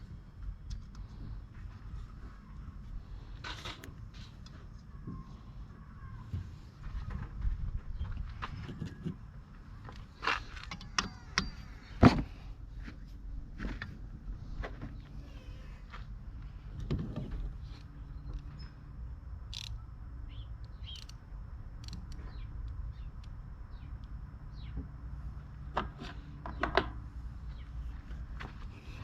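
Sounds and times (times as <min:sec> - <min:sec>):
steady low hum: 0:00.0 - 0:29.0
birds chirping: 0:19.6 - 0:21.2, 0:21.9 - 0:24.9.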